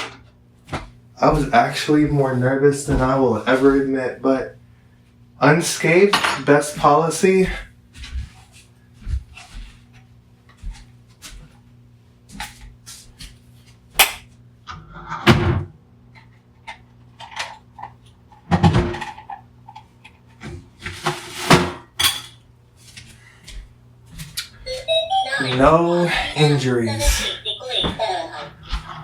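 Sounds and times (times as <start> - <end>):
faint steady hum: 0.0 - 21.0.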